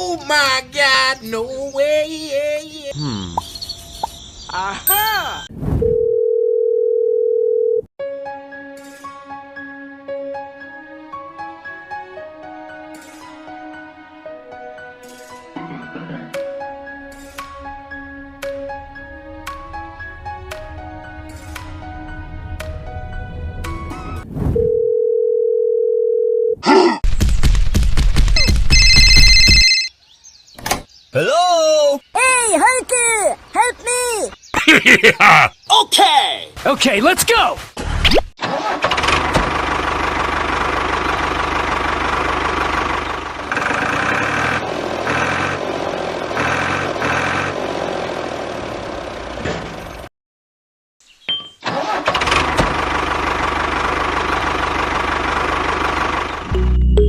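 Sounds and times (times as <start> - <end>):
telephone dial tone: 5.9 - 7.9, 24.6 - 26.6, 28.7 - 29.9
music: 8.0 - 24.2, 56.5 - 57.0
small engine running: 38.8 - 49.4, 52.0 - 56.6.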